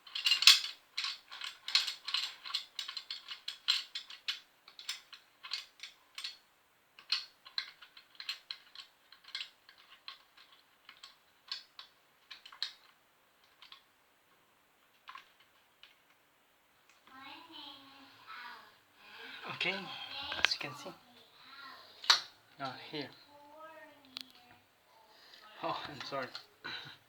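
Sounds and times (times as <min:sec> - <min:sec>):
metal tools clicking and clinking: 0:00.0 - 0:06.4, 0:07.0 - 0:13.8, 0:25.6 - 0:26.9.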